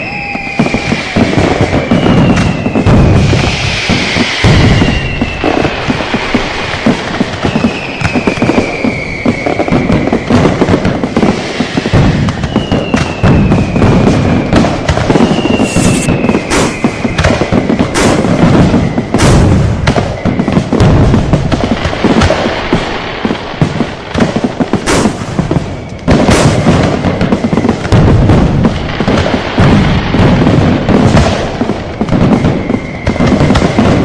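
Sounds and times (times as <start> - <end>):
falling firework whistles: 0.0 - 34.0
firecrackers exploding: 0.0 - 34.0.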